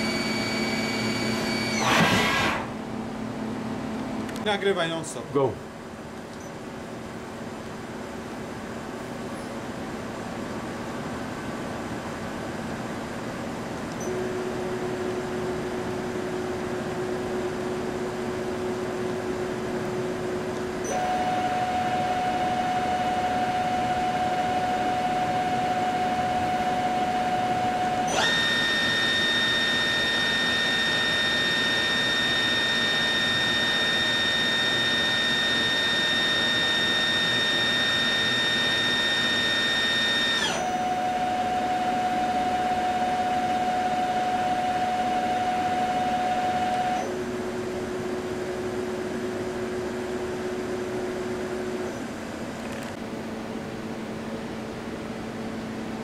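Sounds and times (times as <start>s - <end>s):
machine spindle whine: 0.0s - 3.1s, 20.2s - 47.3s.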